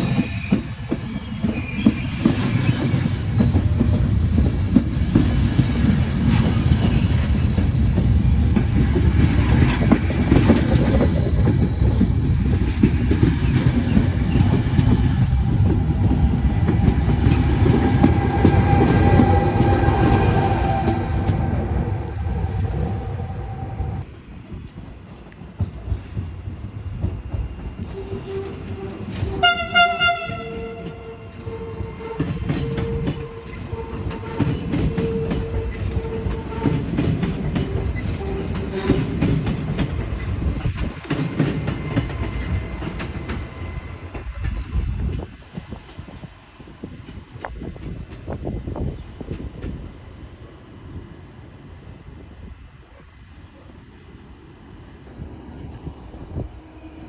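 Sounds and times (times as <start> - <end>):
train rumbling: 0.0 - 57.0
train horn blast: 16.8 - 24.0, 28.0 - 39.0.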